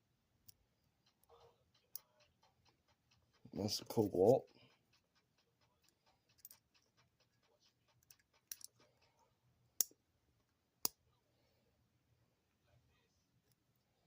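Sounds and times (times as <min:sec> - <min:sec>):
hand tools clicking and tapping: 0:00.4 - 0:09.1.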